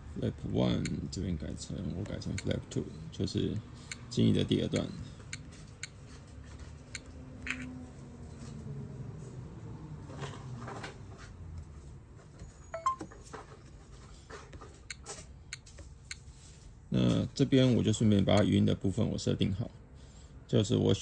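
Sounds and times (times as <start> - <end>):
brief electronic tone: 12.5 - 13.2.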